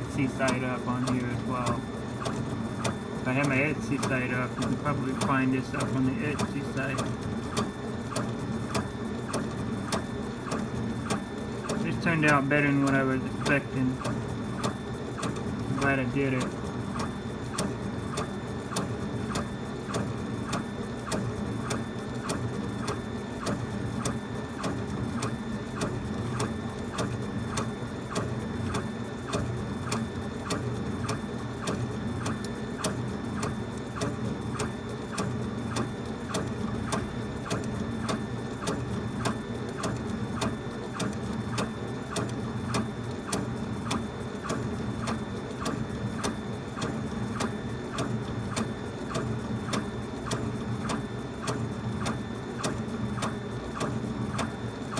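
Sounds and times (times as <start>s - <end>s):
engraver head motors: 0.0s - 8.8s
laser engraver machine hum: 0.0s - 54.9s.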